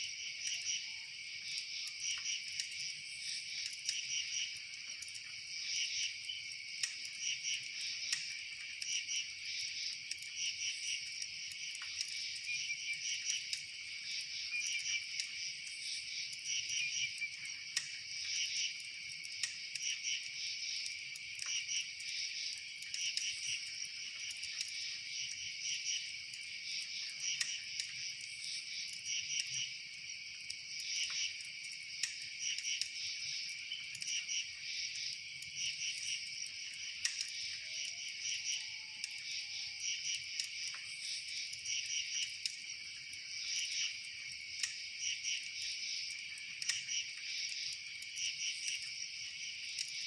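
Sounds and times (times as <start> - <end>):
crickets chirping: 0.0 - 50.0
faint clicks: 6.2 - 9.0, 17.2 - 25.4, 26.3 - 29.6, 30.4 - 34.3, 34.9 - 38.4, 40.0 - 49.0.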